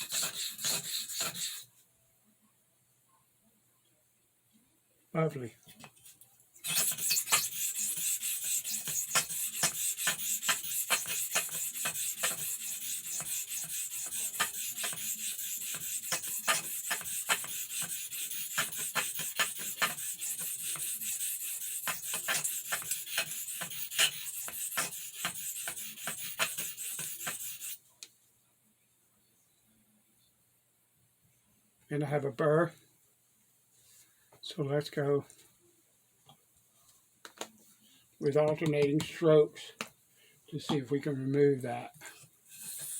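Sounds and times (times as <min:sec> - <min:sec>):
knife blade scraping on whetstone: 0:00.0 - 0:01.6, 0:06.6 - 0:27.8, 0:42.5 - 0:42.9.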